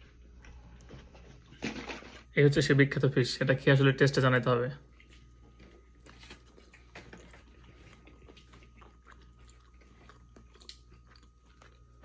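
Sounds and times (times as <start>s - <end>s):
faint chewing: 0.0s - 2.1s, 4.8s - 12.0s.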